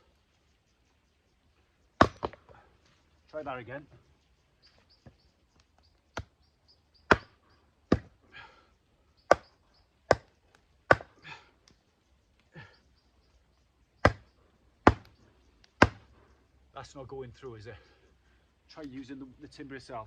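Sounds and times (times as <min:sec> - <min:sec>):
axe knocking on chopping block: 0:07.1 - 0:07.3, 0:10.9 - 0:11.1, 0:14.9 - 0:15.1, 0:15.8 - 0:16.0.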